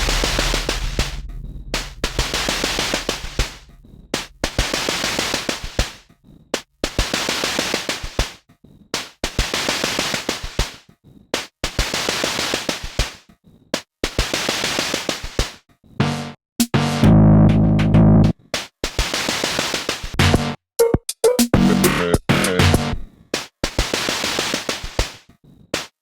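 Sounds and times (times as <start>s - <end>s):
dense rapid clicks: 0.0s - 6.0s
electronic drum pattern: 0.0s - 6.0s, 16.0s - 18.3s, 20.2s - 23.0s
long hissing hits: 0.0s - 6.0s.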